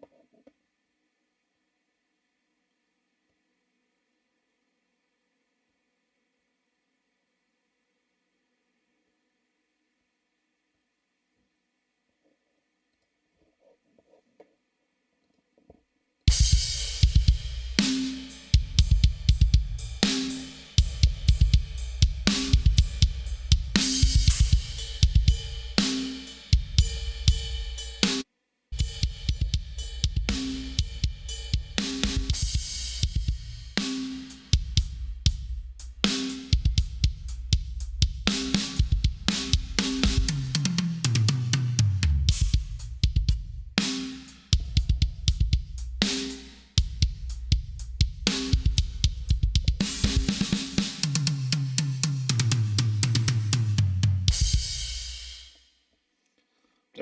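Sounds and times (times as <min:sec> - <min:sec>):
descending tom fill: 0:16.3 - 0:28.2
rock drum groove: 0:16.3 - 0:28.2, 0:28.8 - 0:55.6.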